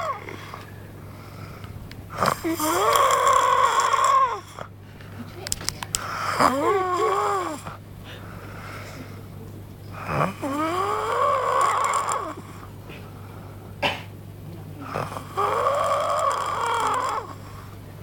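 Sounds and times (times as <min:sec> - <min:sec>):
dinosaur snoring: 0:00.0 - 0:01.5, 0:02.1 - 0:04.7, 0:06.0 - 0:08.8, 0:09.9 - 0:12.7, 0:14.8 - 0:17.7
sharp clicks: 0:05.4 - 0:06.1.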